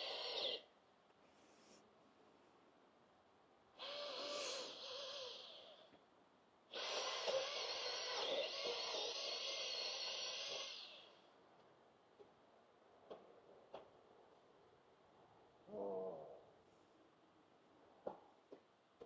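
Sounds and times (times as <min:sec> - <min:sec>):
chainsaw revving: 0:06.7 - 0:11.1.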